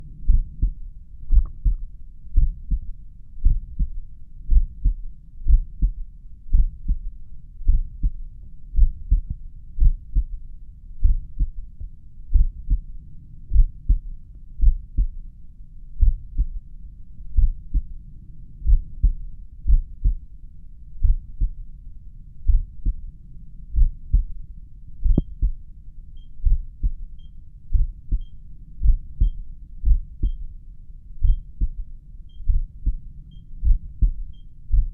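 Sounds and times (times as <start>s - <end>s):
heartbeat through stethoscope: 0.0s - 10.4s, 11.0s - 12.9s, 13.5s - 15.2s, 16.0s - 16.6s, 17.4s - 17.9s, 18.6s - 20.2s, 21.0s - 21.6s, 22.4s - 23.0s, 23.7s - 24.4s, 25.0s - 25.6s, 26.2s - 30.6s, 31.2s - 34.9s.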